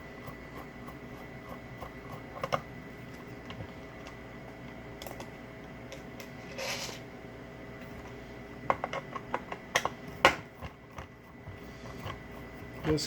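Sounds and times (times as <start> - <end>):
faint steady hum: 0.0 - 13.0
metal parts scraping: 6.4 - 7.0.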